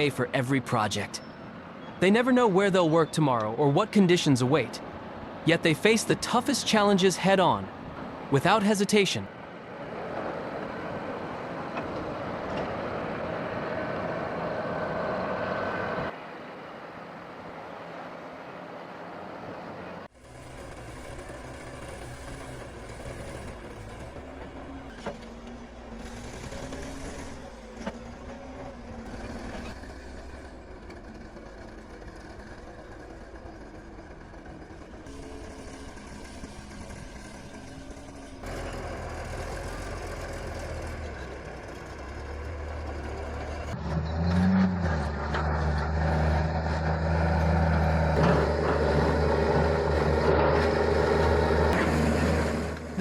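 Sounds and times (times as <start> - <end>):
diesel earthmoving machinery: 0.0 - 53.0
engine revving under load: 20.2 - 53.0.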